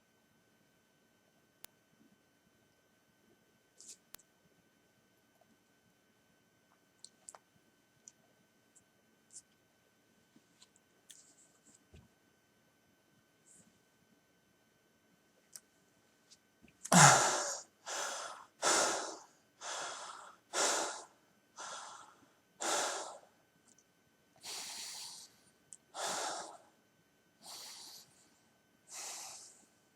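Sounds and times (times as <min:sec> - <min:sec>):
man exhaling loudly: 0:16.9 - 0:19.0
man gasping heavily: 0:16.9 - 0:21.0.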